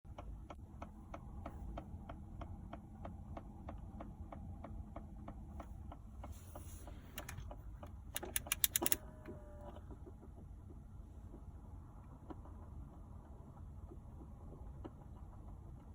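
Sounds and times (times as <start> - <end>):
faint regular ticking: 0.1 - 9.1
rapid loud clicks: 7.2 - 9.0.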